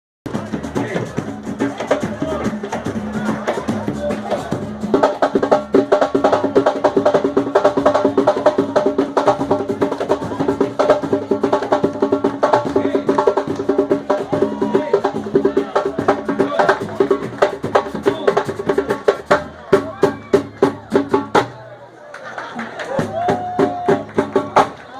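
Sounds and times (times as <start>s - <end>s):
samba percussion playing fast rhythm: 0.2s - 21.7s, 22.4s - 24.9s.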